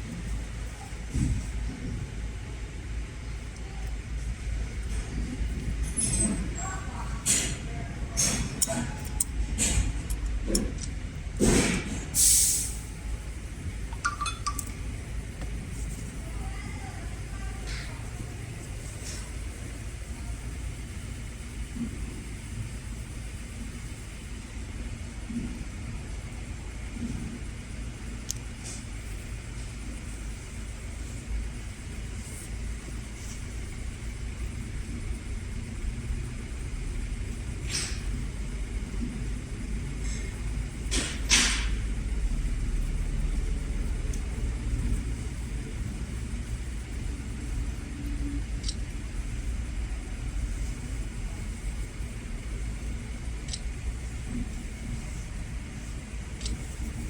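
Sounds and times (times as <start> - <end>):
low background rumble: 0.0 - 57.0
faint brief hisses: 11.5 - 12.9.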